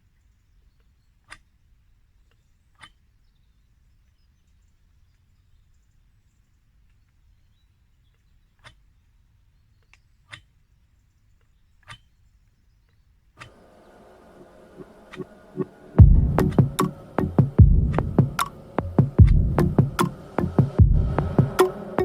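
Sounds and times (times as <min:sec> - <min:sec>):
electronic music with beat: 0:15.1 - 0:22.0.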